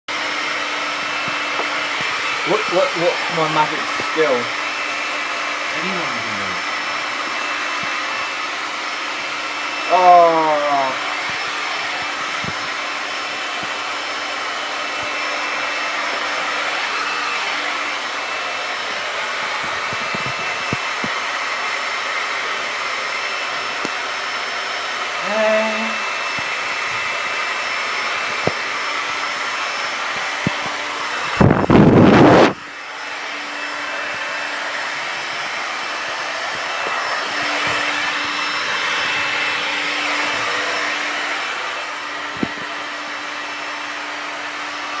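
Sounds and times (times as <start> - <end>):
hair dryer running: 0.1 - 45.0
loud rush: 24.8 - 43.5.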